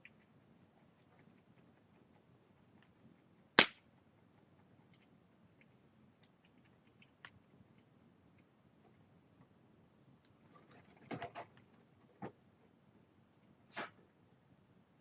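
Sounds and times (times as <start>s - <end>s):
loud sharp crack: 3.6s - 3.9s.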